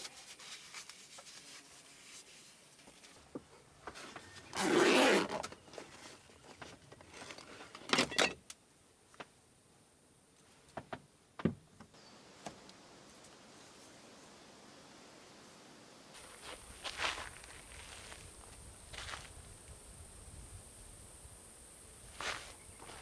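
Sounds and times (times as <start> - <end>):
zipper-like rasp: 4.6 - 5.4.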